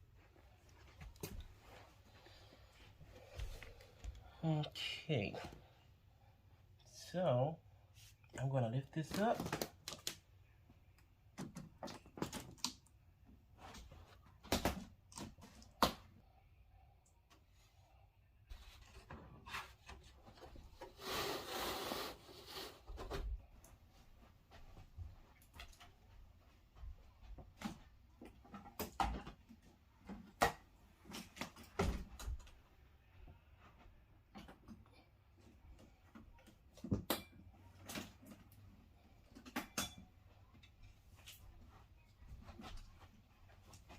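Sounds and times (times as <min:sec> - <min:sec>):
plastic parts clicking and knocking: 0:11.3 - 0:12.9.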